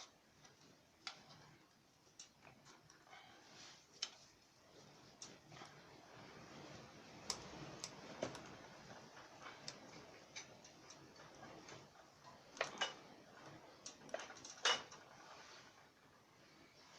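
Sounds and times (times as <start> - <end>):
light clicks and taps: 0.0 - 6.0.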